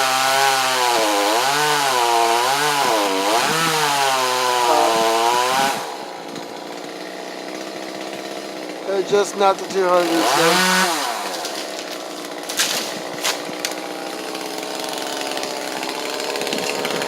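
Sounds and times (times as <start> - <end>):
chainsaw cutting hardwood: 0.0 - 17.0.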